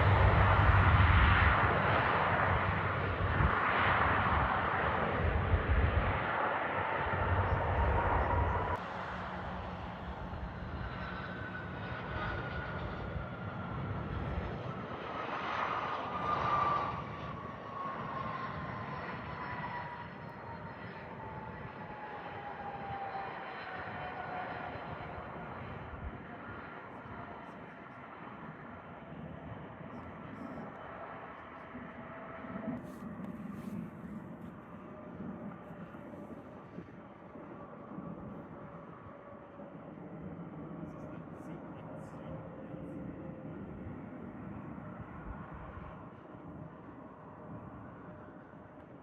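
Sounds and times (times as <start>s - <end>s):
jet engines passing: 0.0s - 49.0s.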